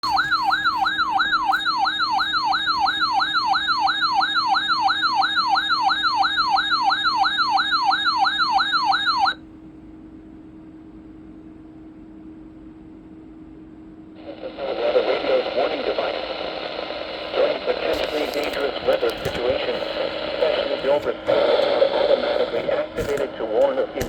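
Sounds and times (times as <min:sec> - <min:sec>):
warbling siren alarm: 0:00.0 - 0:09.4.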